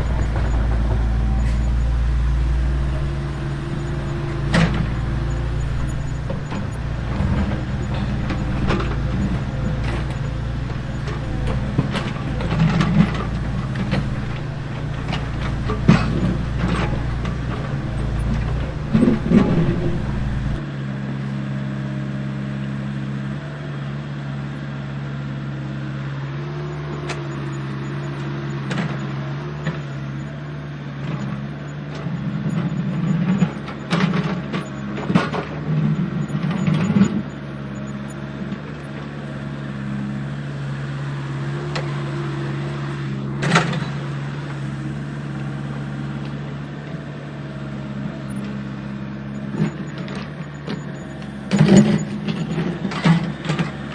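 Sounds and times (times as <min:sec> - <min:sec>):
electric motor hum: 0:00.0 - 0:20.6.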